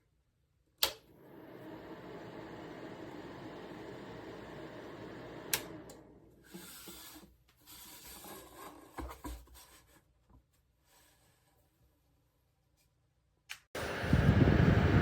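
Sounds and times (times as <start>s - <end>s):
sharp click: 0.8s - 1.0s
fan heater blowing: 0.8s - 6.8s, 13.8s - 15.0s.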